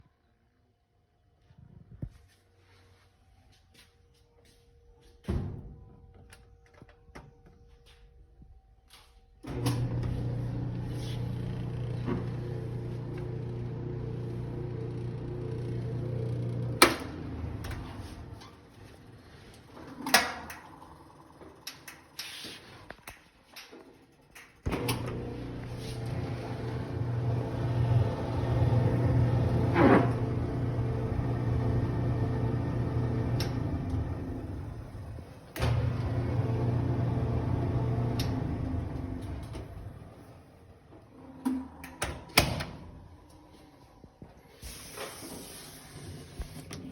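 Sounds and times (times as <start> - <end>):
clothes dryer humming: 8.9 - 22.8, 24.4 - 46.9.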